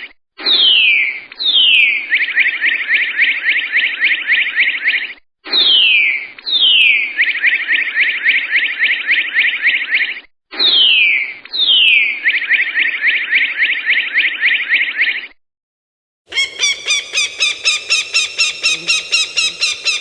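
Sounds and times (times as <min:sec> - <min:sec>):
high chirping animal call: 0:16.3 - 0:20.0.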